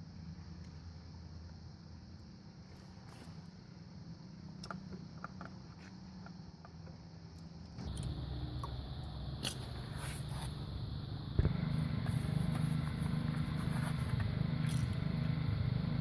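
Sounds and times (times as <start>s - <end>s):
low engine rumble: 7.7s - 16.0s.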